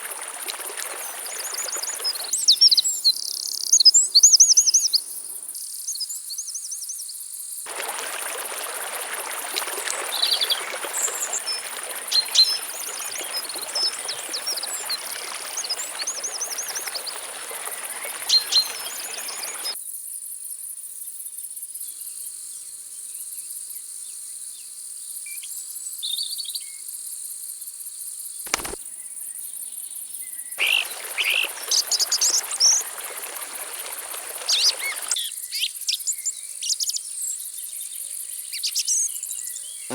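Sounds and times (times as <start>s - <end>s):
small birds chirping: 0.0s - 6.5s, 7.7s - 19.8s, 28.5s - 28.8s, 30.6s - 35.2s.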